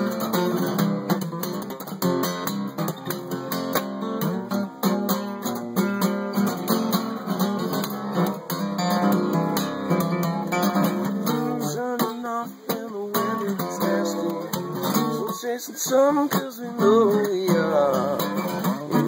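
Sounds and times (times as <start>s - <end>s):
bending guitar lead notes: 0.0s - 12.2s
acoustic guitar strumming: 0.0s - 19.0s.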